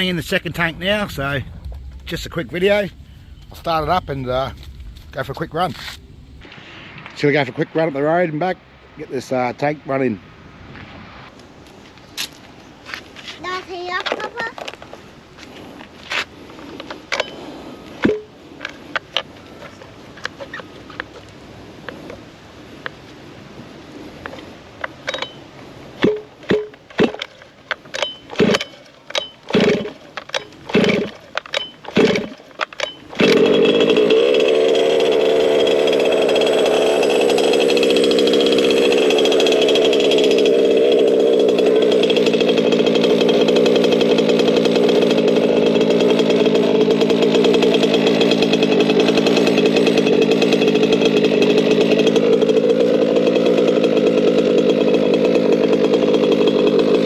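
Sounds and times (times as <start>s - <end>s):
pull starter strokes: 26.0s - 57.0s
two-stroke engine running: 28.0s - 57.0s.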